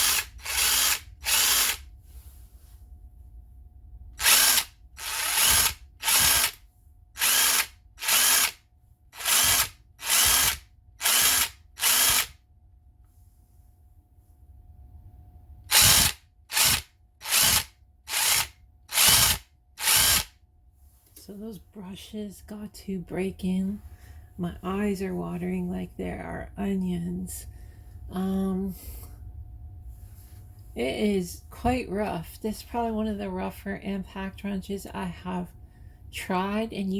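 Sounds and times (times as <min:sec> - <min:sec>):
impact wrench motor bursts: 0:00.0 - 0:01.8, 0:04.2 - 0:06.6, 0:07.2 - 0:08.6, 0:09.2 - 0:12.4, 0:15.7 - 0:20.3.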